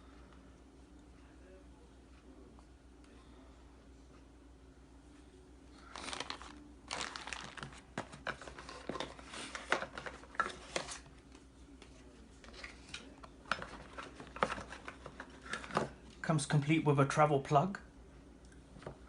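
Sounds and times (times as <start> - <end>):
plastic packaging crinkling: 5.8 - 11.0.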